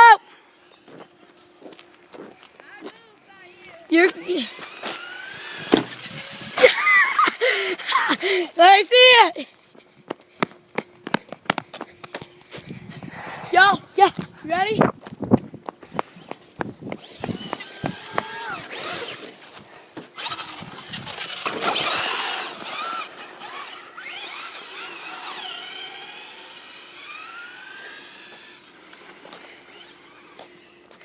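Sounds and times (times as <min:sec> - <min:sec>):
toy truck electric motor whining: 0:03.9 - 0:07.5, 0:16.9 - 0:31.0.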